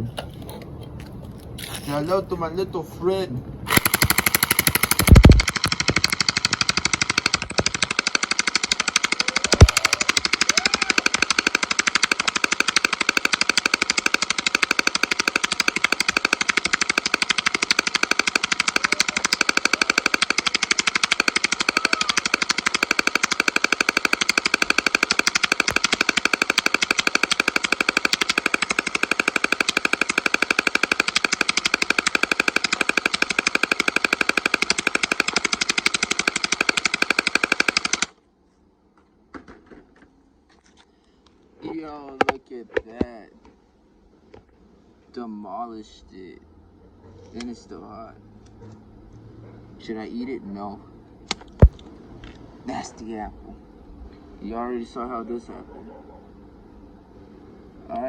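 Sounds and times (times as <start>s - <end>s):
gel-ball gun firing full-auto: 3.7s - 38.1s, 51.4s - 51.8s.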